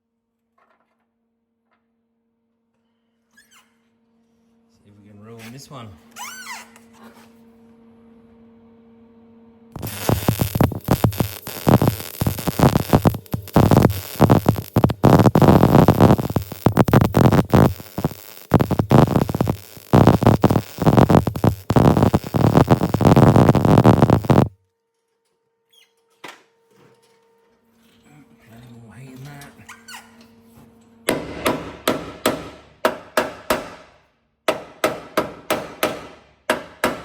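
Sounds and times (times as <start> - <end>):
welder arc crackling and buzzing: 9.8 - 24.6.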